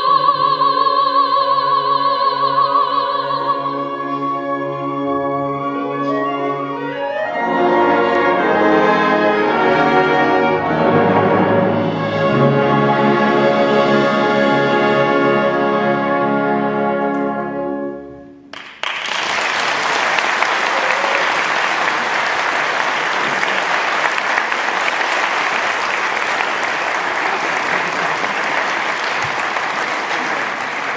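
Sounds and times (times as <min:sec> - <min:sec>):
wind band holding a chord: 0:03.7 - 0:18.3
audience applause: 0:18.5 - 0:30.9.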